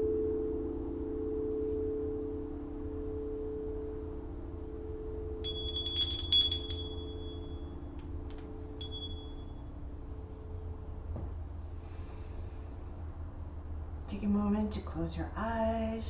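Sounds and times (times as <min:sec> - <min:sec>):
singing bowl ringing: 0:05.2 - 0:07.8, 0:08.8 - 0:09.6
small high-pitched chime: 0:05.4 - 0:07.7, 0:08.8 - 0:09.6.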